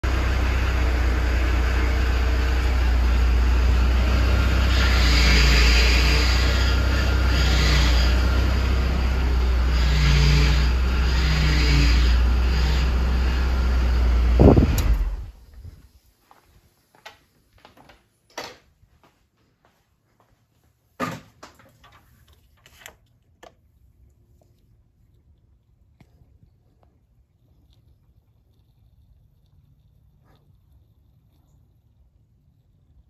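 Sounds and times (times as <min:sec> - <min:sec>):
engine running: 0:00.0 - 0:15.7
power steering pump noise: 0:00.0 - 0:15.7.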